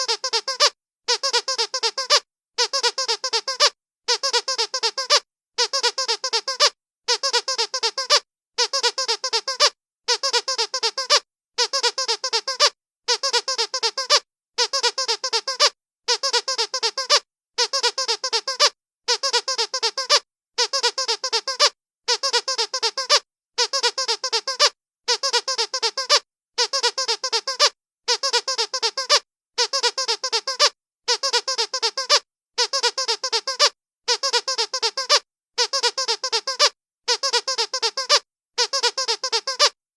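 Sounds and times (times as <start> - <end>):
squeaky dog toy squeaking: 0.0 - 39.8.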